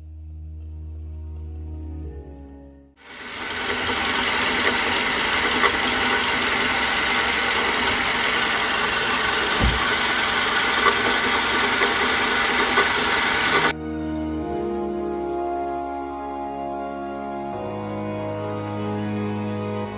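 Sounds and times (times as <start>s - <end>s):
music: 0.0s - 3.0s, 13.8s - 19.9s
car engine running: 3.0s - 13.7s
fast mechanical rhythmic noise: 3.0s - 13.7s
low thump: 9.4s - 10.0s.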